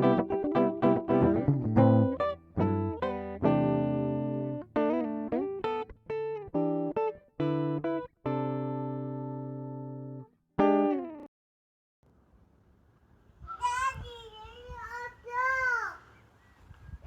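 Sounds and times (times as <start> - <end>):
guitar plucked notes and chords: 0.0 - 11.3.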